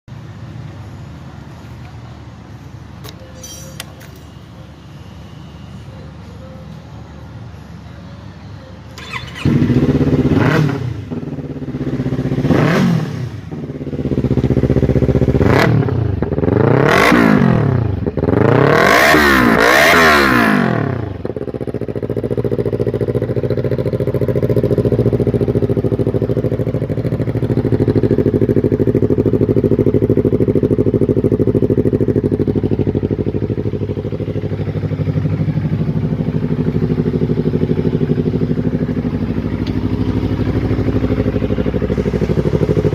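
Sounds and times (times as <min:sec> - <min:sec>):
motorcycle engine idling: 0:00.1 - 0:17.0, 0:20.6 - 0:42.9
motorcycle engine revving: 0:09.0 - 0:42.9.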